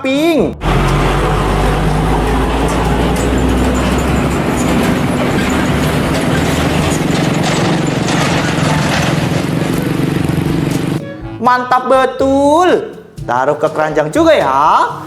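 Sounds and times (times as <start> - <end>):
bus engine running: 0.0 - 11.4.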